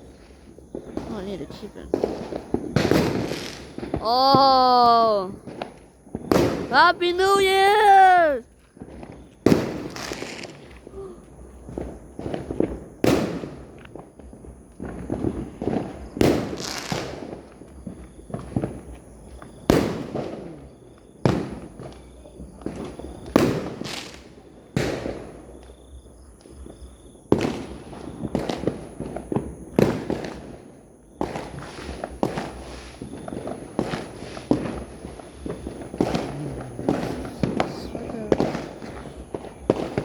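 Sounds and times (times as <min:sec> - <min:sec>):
fireworks bangs: 0:00.7 - 0:10.9, 0:11.7 - 0:17.6, 0:31.2 - 0:40.0.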